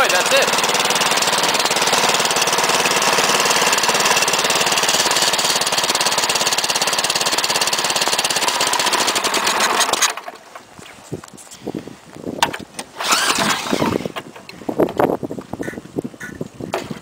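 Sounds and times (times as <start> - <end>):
snowblower engine running: 0.0 - 10.5, 13.0 - 14.2.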